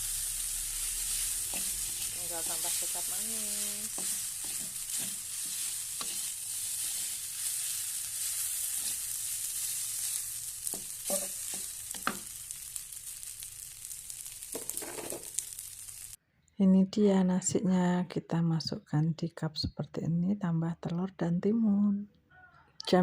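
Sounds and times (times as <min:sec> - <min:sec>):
rice sizzling in a pan: 0:00.0 - 0:16.2.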